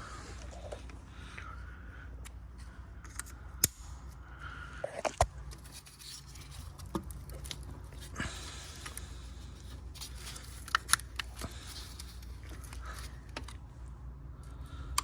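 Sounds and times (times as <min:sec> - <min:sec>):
faint low hum: 0:00.0 - 0:15.0
screwdriver clicking on plastic: 0:10.0 - 0:13.6.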